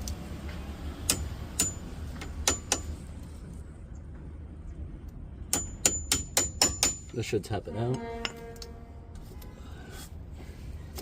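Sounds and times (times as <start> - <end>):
hammer tapping on metal punch: 1.1 - 2.9, 5.5 - 7.2.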